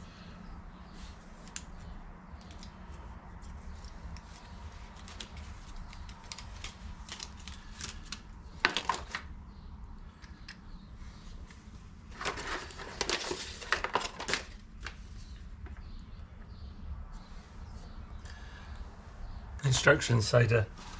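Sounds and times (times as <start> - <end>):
steady low hum: 0.0 - 13.5, 14.5 - 20.9
parts clattering: 12.1 - 14.6.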